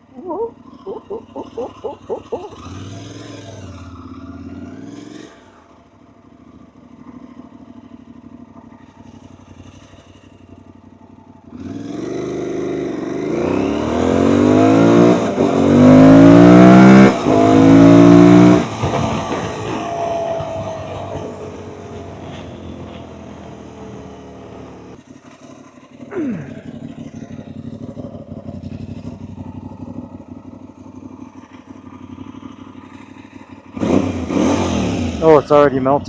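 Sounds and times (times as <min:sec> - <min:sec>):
motorcycle engine revving: 0:00.0 - 0:36.0.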